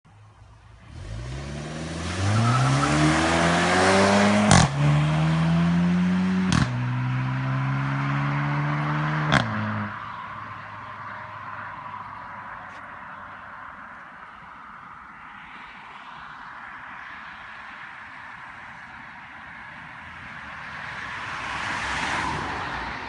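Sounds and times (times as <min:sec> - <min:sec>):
car engine accelerating hard: 0:00.9 - 0:09.9.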